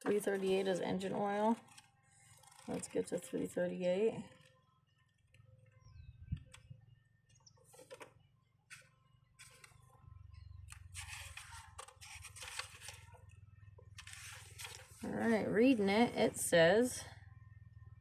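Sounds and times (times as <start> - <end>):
paper pages rustling: 1.6 - 2.9, 8.7 - 9.8, 11.0 - 13.3, 13.9 - 15.0.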